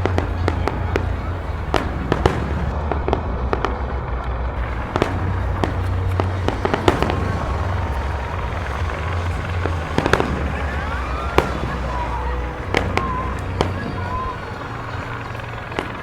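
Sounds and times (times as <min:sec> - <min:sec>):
fireworks exploding: 0:00.0 - 0:16.0
low rumble: 0:00.0 - 0:16.0.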